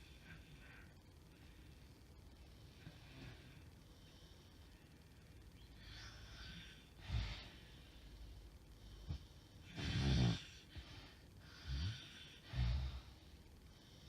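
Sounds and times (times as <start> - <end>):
woman snoring: 9.7 - 10.7, 11.6 - 13.1.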